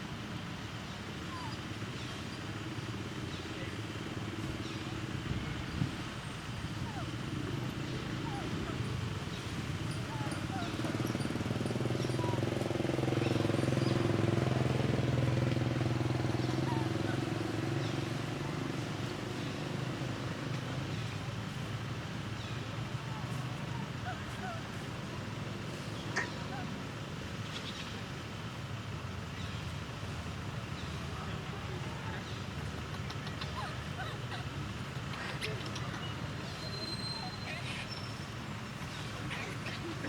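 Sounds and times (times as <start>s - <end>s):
low mechanical rumble: 0.0s - 40.0s
vehicle engine running: 0.0s - 40.0s
faint bird chirps: 35.4s - 39.2s.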